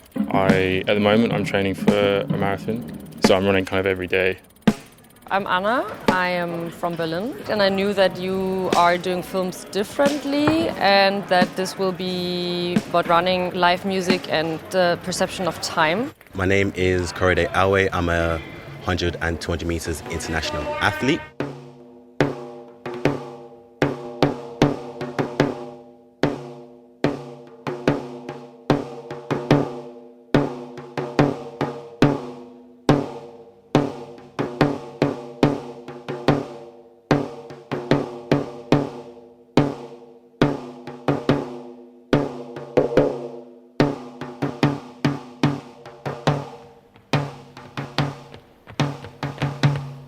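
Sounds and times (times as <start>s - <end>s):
drum kit hits: 0.0s - 6.4s, 9.9s - 11.8s.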